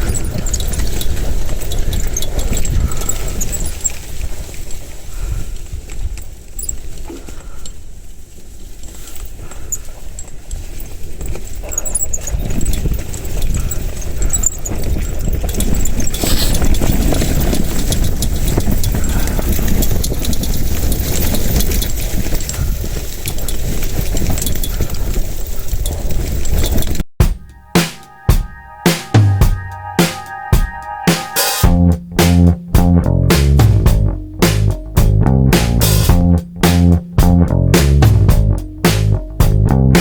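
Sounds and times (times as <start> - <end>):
strong wind on microphone: 0.0 - 4.4, 12.3 - 27.0.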